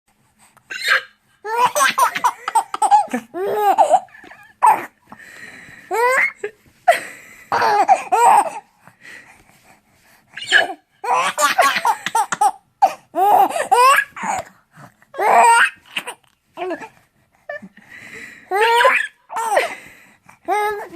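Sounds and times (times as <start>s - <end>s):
baby laughing: 0.7s - 5.0s, 5.9s - 6.5s, 7.5s - 8.6s, 10.4s - 14.5s, 15.2s - 16.2s, 18.5s - 19.8s.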